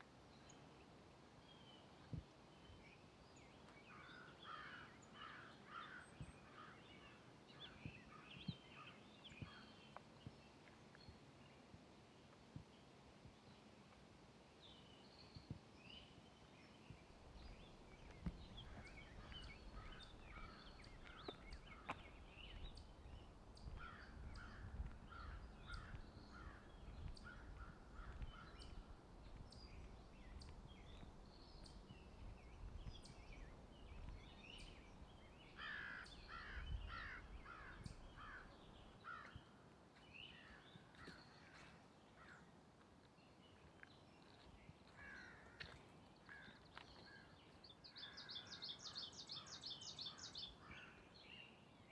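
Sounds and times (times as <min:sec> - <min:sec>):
forest birds calling: 0:00.3 - 0:11.6, 0:14.6 - 0:51.9
footsteps on a trail: 0:09.3 - 0:12.7, 0:16.7 - 0:38.4, 0:39.1 - 0:48.4.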